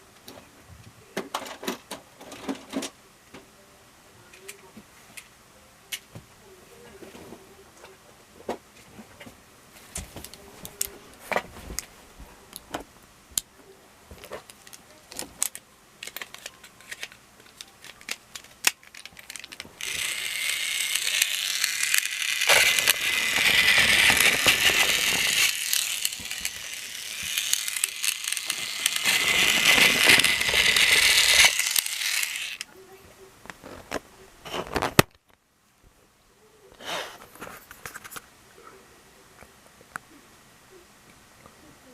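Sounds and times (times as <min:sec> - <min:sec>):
rustling whirring noise: 0:08.7 - 0:35.0
plastic toy parts clicking: 0:14.2 - 0:32.7.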